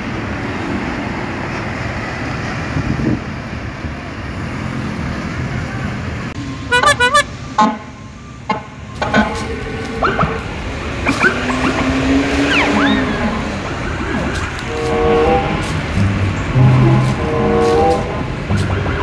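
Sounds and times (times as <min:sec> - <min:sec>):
road traffic noise: 0:00.0 - 0:19.0
bus multi-tone horn: 0:06.4 - 0:19.0.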